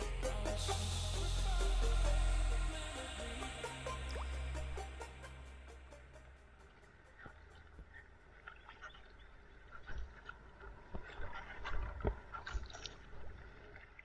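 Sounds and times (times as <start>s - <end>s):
low steady rumble: 0.0s - 8.0s.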